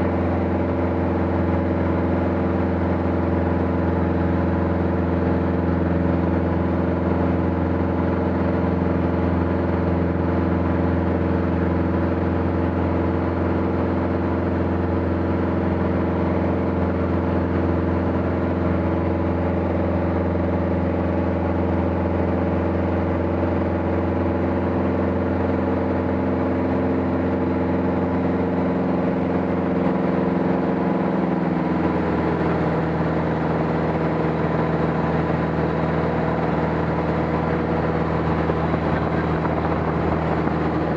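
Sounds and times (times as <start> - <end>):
aircraft engine drone: 29.0 - 40.9.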